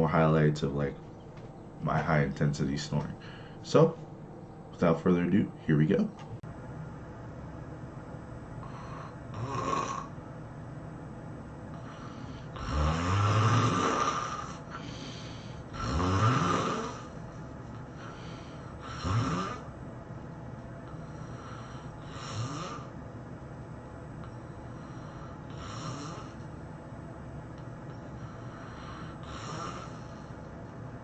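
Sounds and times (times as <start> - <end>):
faint breaths: 3.1 - 4.2, 8.6 - 10.2, 11.7 - 19.8, 20.8 - 23.0, 24.1 - 26.6, 27.9 - 30.7
person snoring: 8.6 - 10.2, 11.7 - 17.2, 17.9 - 19.7, 20.9 - 22.9, 24.7 - 26.4, 28.1 - 30.4.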